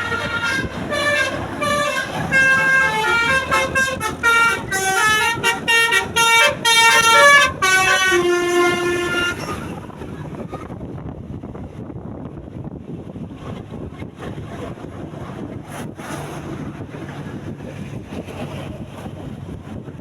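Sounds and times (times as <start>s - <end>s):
bus horn playing a tune: 0.0s - 9.9s.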